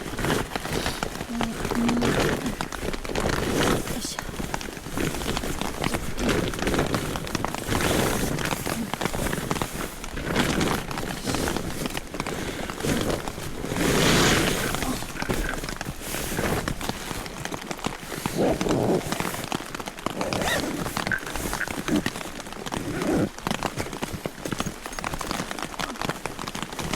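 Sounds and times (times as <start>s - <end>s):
rain on a tent: 0.0s - 26.9s
tent fabric rustling and knocking: 0.0s - 26.9s.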